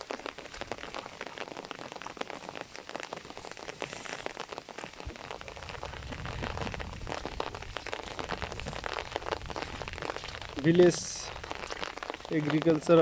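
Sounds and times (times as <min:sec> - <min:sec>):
rain pattering: 0:00.0 - 0:13.0
low rumble: 0:05.1 - 0:11.6.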